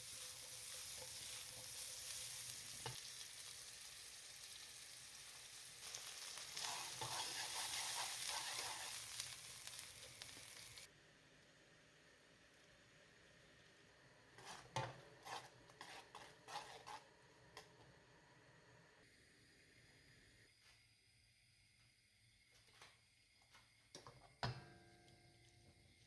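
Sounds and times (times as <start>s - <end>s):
food sizzling in frying pan: 0.0s - 17.0s
utensil scraping pan: 6.0s - 9.3s, 14.4s - 17.1s.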